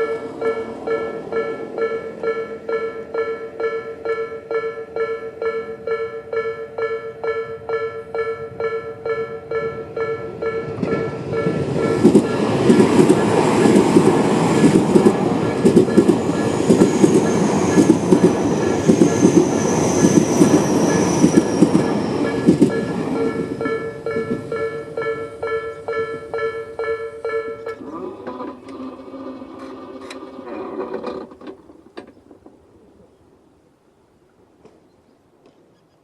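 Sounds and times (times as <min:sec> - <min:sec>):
level crossing alarm chime: 0:00.0 - 0:12.0, 0:20.5 - 0:27.8
electric train rumble: 0:00.0 - 0:33.8
high train whine: 0:00.0 - 0:34.8
train wheels clicking over rail joints: 0:10.0 - 0:26.9, 0:27.6 - 0:33.2.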